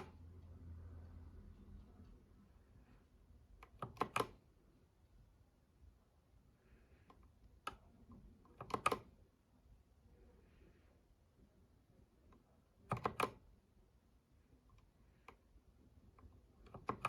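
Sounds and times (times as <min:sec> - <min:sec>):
mechanical keyboard clacks: 0:03.6 - 0:04.4, 0:08.5 - 0:09.1, 0:12.9 - 0:13.4, 0:16.6 - 0:17.0.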